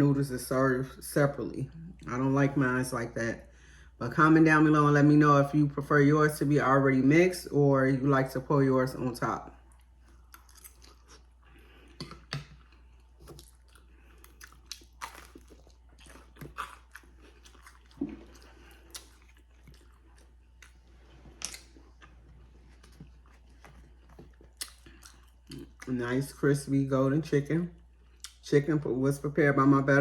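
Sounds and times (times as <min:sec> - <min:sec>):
person chewing food: 0:09.5 - 0:26.0, 0:27.8 - 0:28.4.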